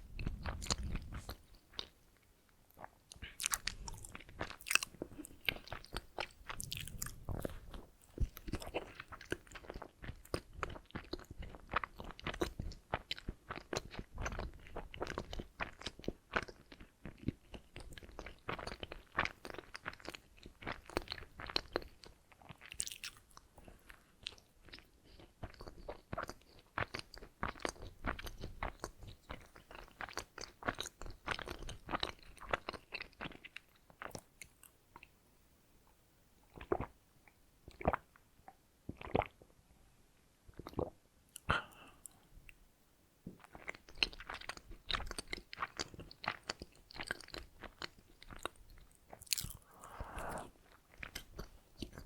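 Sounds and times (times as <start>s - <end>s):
chewing and biting donuts: 2.8s - 34.8s, 43.4s - 52.0s.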